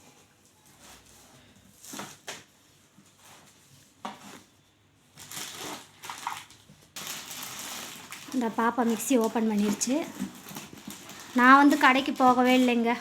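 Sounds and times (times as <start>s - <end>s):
cardboard and tape tearing: 5.2s - 13.0s.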